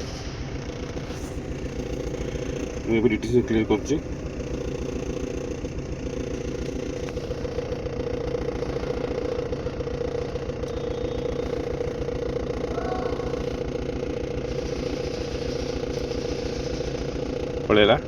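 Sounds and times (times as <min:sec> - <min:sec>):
diesel engine idling with misfire: 0:00.0 - 0:18.0.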